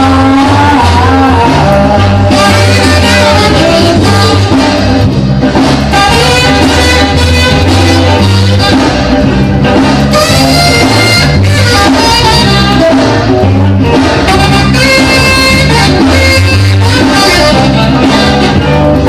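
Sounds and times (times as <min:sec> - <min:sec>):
horns playing held notes: 0:00.0 - 0:05.0, 0:05.9 - 0:19.0
stepping bass line: 0:00.0 - 0:19.0.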